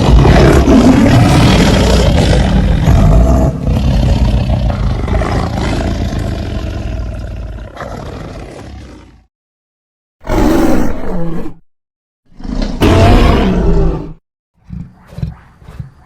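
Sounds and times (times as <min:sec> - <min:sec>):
deep rough monster roar: 0:00.0 - 0:09.3, 0:12.3 - 0:14.2.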